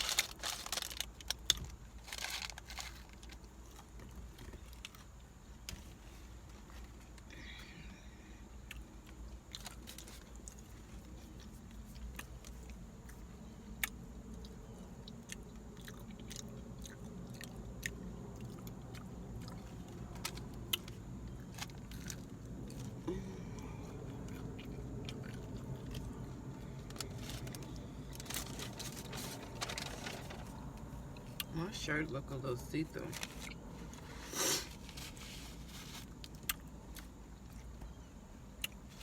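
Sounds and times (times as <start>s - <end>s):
person chewing food: 8.5s - 29.9s.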